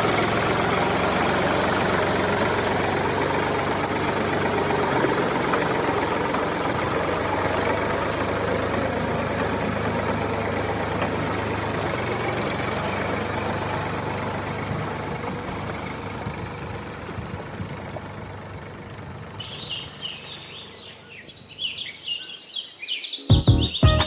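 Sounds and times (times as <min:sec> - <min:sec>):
tractor motor running: 0:00.0 - 0:20.8.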